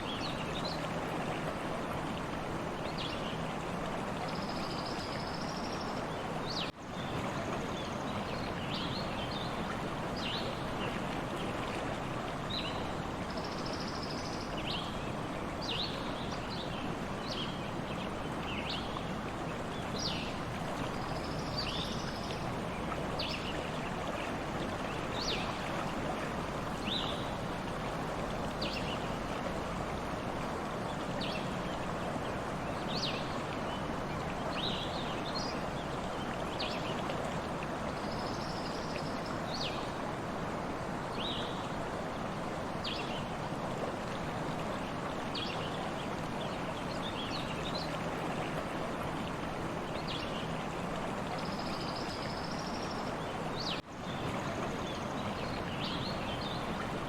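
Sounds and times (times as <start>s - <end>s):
stream running: 0.0s - 57.0s.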